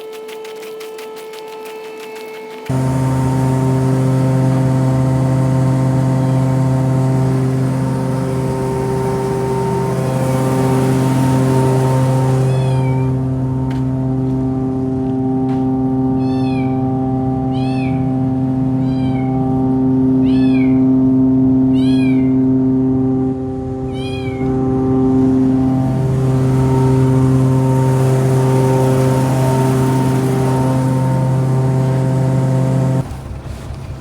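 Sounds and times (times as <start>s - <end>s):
engine drone: 0.0s - 34.0s
high animal call: 21.7s - 22.5s, 23.9s - 24.5s.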